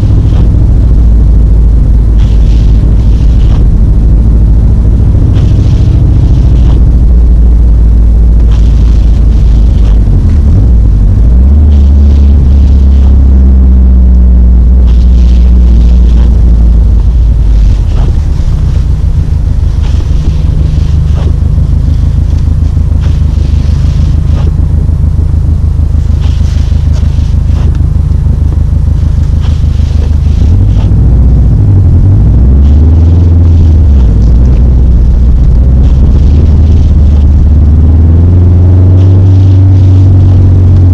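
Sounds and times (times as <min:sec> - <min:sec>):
car engine droning: 0:00.0 - 0:40.9
hiss: 0:02.1 - 0:03.8, 0:04.9 - 0:07.0, 0:08.4 - 0:10.5, 0:14.8 - 0:16.4, 0:17.0 - 0:24.7, 0:26.0 - 0:27.8, 0:28.9 - 0:31.0.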